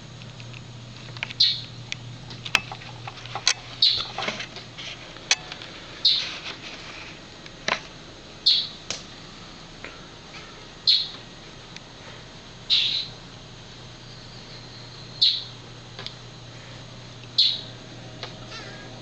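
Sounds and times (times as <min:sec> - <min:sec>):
bird chirping: 0:01.4 - 0:01.8, 0:03.8 - 0:04.1, 0:06.0 - 0:06.3, 0:08.4 - 0:08.8, 0:10.8 - 0:11.2, 0:12.7 - 0:13.2, 0:14.0 - 0:15.6, 0:17.4 - 0:17.7.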